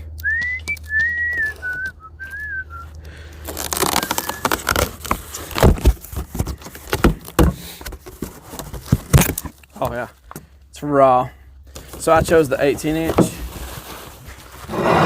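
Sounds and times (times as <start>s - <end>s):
person whistling a tune: 0.2s - 3.0s, 4.0s - 4.7s
cardboard box rustling: 3.4s - 9.7s, 11.8s - 15.0s.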